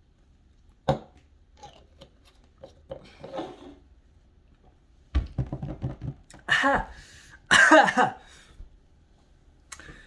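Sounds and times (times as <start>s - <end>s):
bottle knocked on table: 5.2s - 6.2s.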